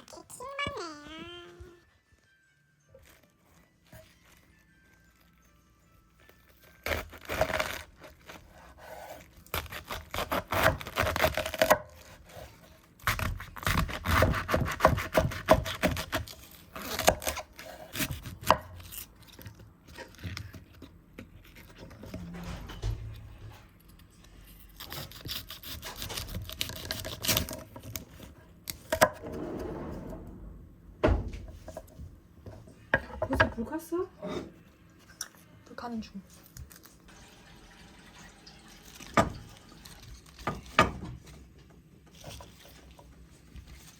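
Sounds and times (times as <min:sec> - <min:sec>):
knife chopping on wooden board: 0:13.0 - 0:16.4.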